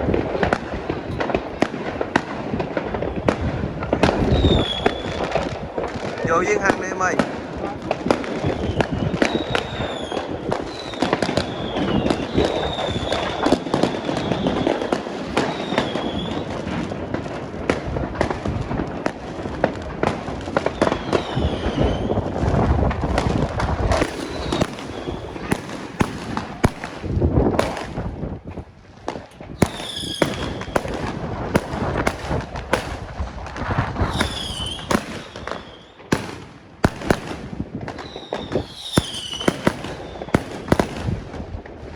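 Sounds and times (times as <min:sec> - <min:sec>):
fireworks bangs and crackling: 0:00.0 - 0:41.9
fireworks whistles: 0:04.1 - 0:05.4, 0:08.4 - 0:16.8, 0:20.6 - 0:22.5, 0:23.1 - 0:28.0, 0:29.5 - 0:33.2, 0:33.9 - 0:41.4.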